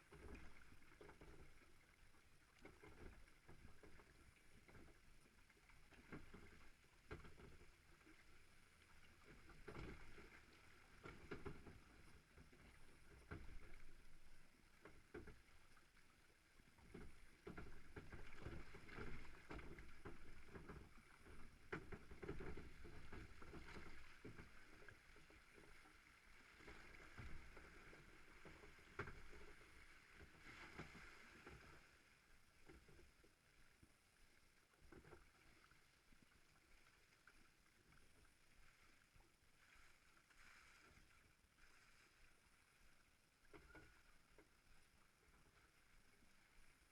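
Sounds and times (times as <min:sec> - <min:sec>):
boat knocks and bumps: 0:09.2 - 0:15.8, 0:16.8 - 0:25.8
water sloshing: 0:16.8 - 0:33.1.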